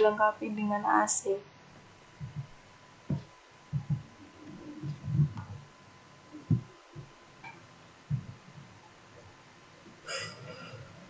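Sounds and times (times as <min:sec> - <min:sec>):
soft low thumps: 0:01.6 - 0:09.9.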